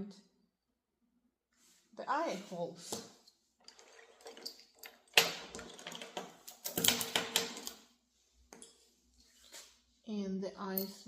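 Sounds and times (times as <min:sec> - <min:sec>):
clicks and rattles: 0:03.6 - 0:07.8.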